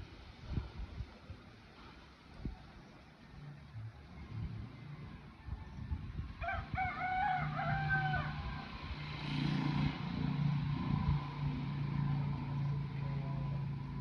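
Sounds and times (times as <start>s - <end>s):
rooster crowing: 5.0s - 8.7s.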